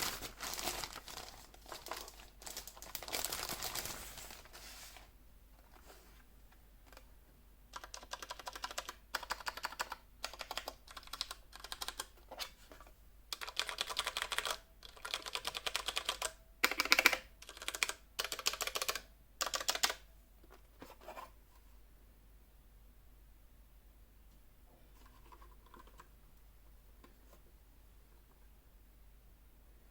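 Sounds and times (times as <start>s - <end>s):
mechanical keyboard typing: 7.7s - 12.2s, 13.3s - 20.0s.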